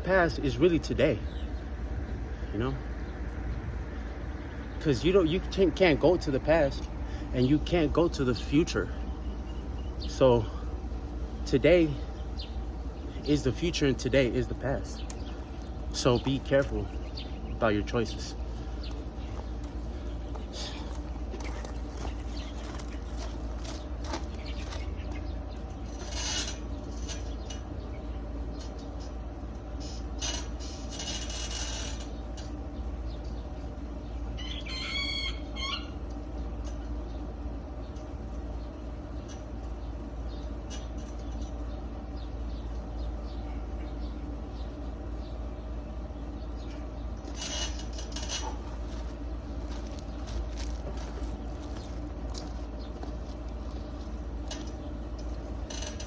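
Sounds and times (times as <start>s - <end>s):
low outdoor rumble: 0.0s - 56.0s
rooster crowing: 34.4s - 36.0s.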